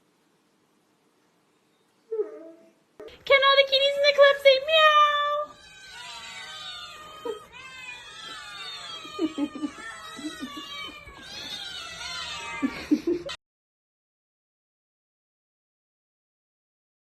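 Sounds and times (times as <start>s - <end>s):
cats meowing and yowling: 4.8s - 13.4s.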